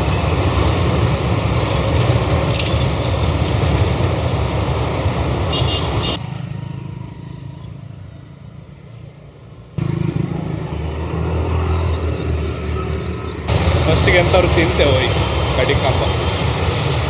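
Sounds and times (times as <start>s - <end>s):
motorcycles and cars passing: 0.0s - 17.0s.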